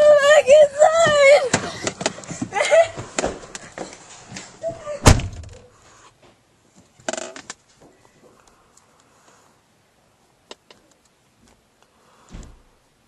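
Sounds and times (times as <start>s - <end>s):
door slamming shut: 5.0s - 5.6s, 12.3s - 12.7s.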